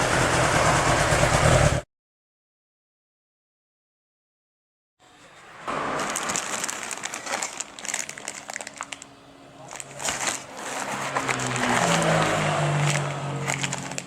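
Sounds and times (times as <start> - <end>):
motorcycle engine running: 0.0 - 1.8.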